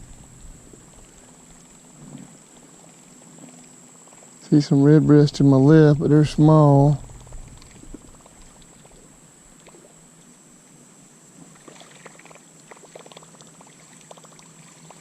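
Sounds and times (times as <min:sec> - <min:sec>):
small ticks: 0:00.0 - 0:04.4, 0:07.0 - 0:10.3, 0:11.4 - 0:15.0
high-pitched insect drone: 0:03.8 - 0:09.4
water splashing and dribbling: 0:11.5 - 0:15.0.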